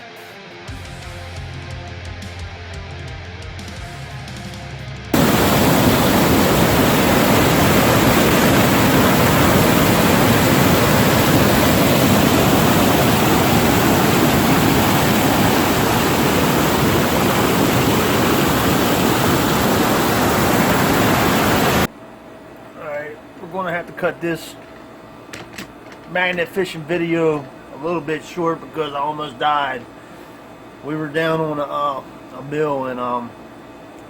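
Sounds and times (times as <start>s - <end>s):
waterfall rushing: 5.2s - 21.9s.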